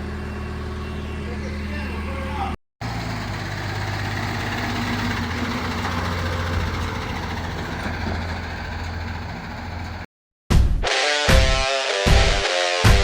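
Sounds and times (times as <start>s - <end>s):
vehicle engine idling: 0.0s - 10.1s.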